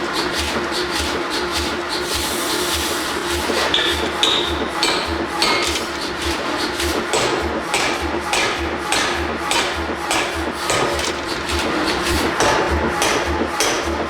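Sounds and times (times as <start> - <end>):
forging hammer blows on metal: 3.3 - 14.0.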